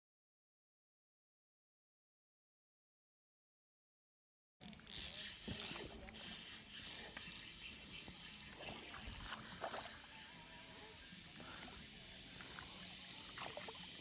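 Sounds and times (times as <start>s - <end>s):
mechanical clicks and rattles: 4.6s - 9.3s
faint steady hiss: 4.6s - 14.0s.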